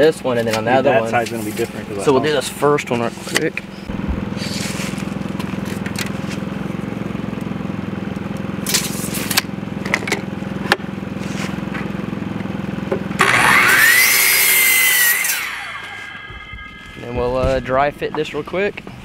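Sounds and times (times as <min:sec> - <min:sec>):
low mechanical hum: 0:00.0 - 0:19.0
power saw cutting board: 0:12.9 - 0:19.0.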